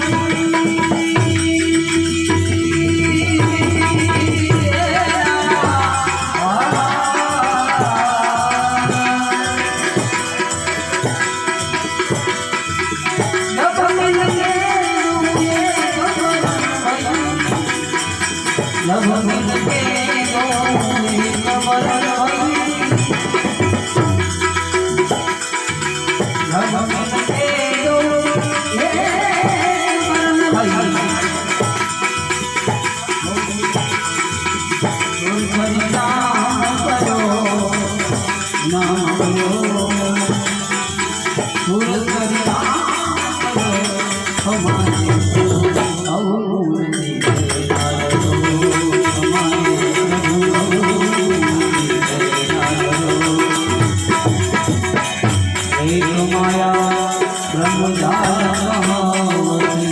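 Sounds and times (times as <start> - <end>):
harmonium playing devotional melody: 0.0 - 59.9.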